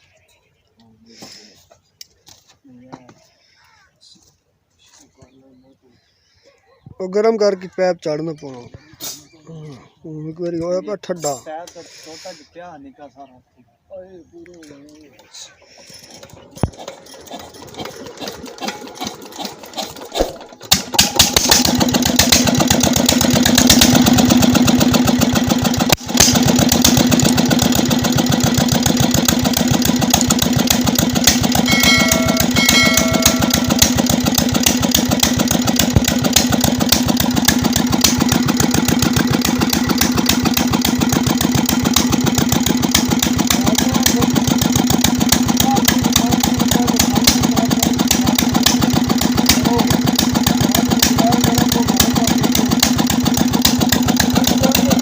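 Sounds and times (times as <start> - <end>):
diesel engine starting and running: 15.2 - 55.0.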